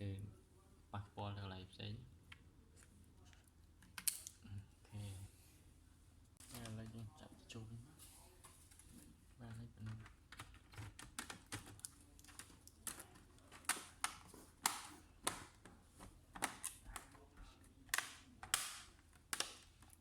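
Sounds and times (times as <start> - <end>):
hard plastic clicks and snaps: 3.8 - 4.4, 17.9 - 20.0.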